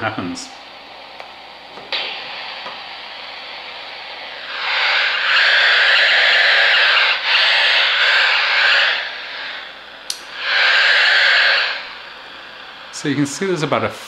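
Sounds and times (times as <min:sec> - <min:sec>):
radio static hiss: 0:00.0 - 0:14.0
click: 0:10.1 - 0:10.3.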